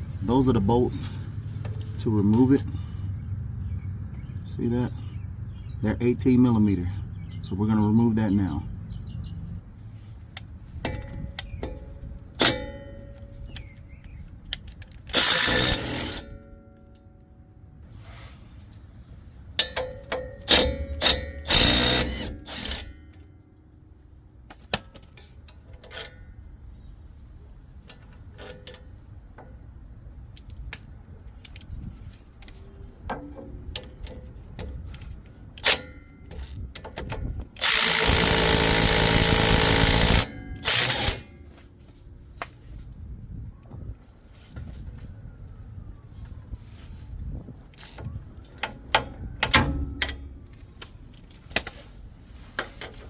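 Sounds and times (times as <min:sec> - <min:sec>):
impact wrench hammering: 0:19.6 - 0:22.9, 0:37.0 - 0:41.2.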